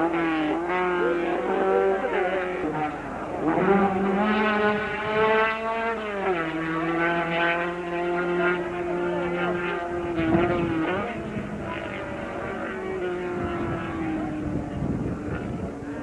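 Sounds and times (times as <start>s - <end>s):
racing car engine at high revs: 0.0s - 16.0s
steady engine note: 0.6s - 5.4s.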